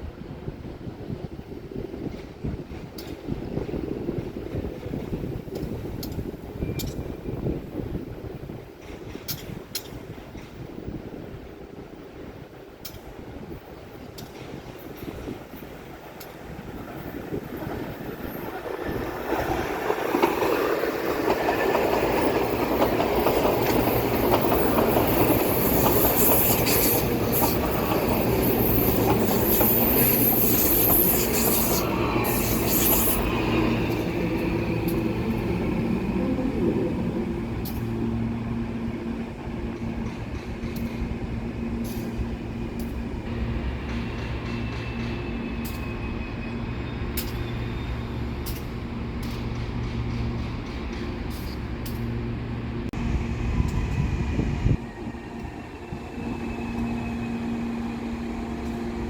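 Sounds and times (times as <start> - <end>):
train running on rails: 0.0 - 59.0
train wheel squeal and hiss: 5.5 - 8.0, 14.2 - 52.3, 53.0 - 59.0
clicks from rail joints: 8.8 - 10.7, 48.4 - 52.2.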